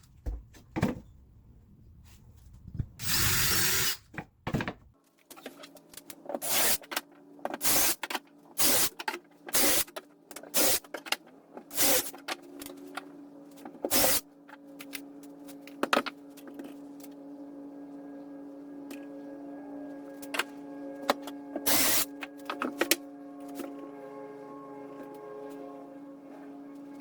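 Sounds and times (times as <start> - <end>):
power drill bursts: 3.0 - 4.1
steady low hum: 5.7 - 27.0.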